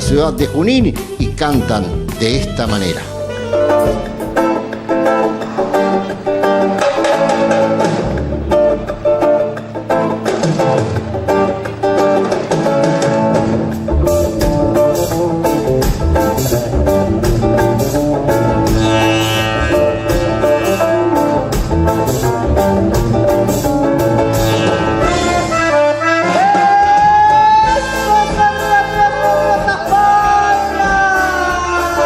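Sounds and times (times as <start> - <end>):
steady drum beat: 0.0 - 3.0, 13.8 - 26.0
plucked guitars: 0.0 - 32.0.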